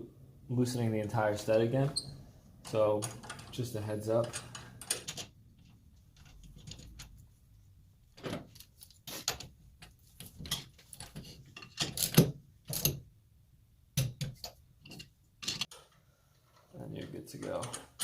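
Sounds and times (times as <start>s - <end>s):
wrenches and nuts clinking on metal: 2.6s - 7.2s, 8.2s - 13.0s, 14.2s - 18.0s.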